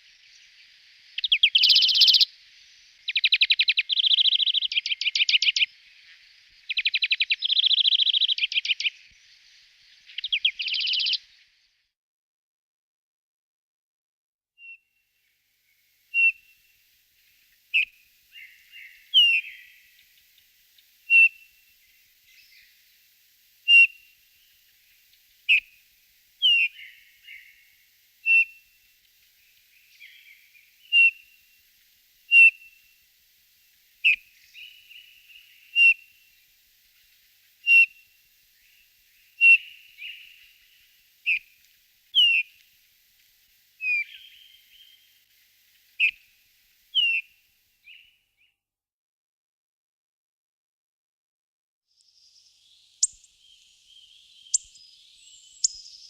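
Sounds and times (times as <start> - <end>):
soft bird twittering: 0.0 - 11.9, 14.6 - 23.0, 26.4 - 28.8, 29.4 - 31.6, 34.0 - 42.6, 43.8 - 48.6, 52.0 - 56.0
sharp whistled bird call: 1.2 - 2.3, 10.1 - 11.2, 16.1 - 16.6, 17.7 - 19.9, 21.1 - 21.5, 23.7 - 24.1, 26.4 - 28.7, 29.8 - 31.3, 32.3 - 32.8, 34.0 - 36.2, 37.6 - 38.0, 39.4 - 41.5, 42.2 - 42.5, 43.8 - 45.1, 46.0 - 46.2, 46.9 - 48.2, 52.2 - 56.0.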